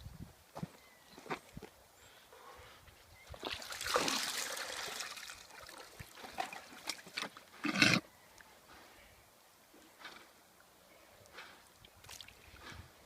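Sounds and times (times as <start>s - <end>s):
loud rustling splash: 3.4s - 7.1s
fluid gushing and splashing: 3.6s - 6.8s.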